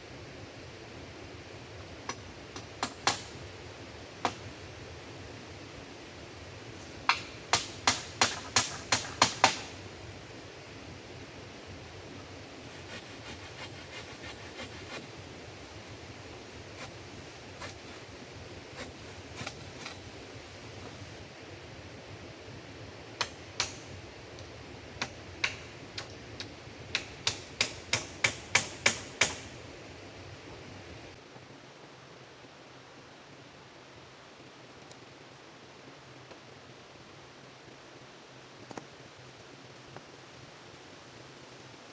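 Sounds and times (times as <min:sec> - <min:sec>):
steady hiss: 0:00.0 - 0:41.9
hard sharp knocks: 0:02.1 - 0:03.4, 0:07.0 - 0:09.8.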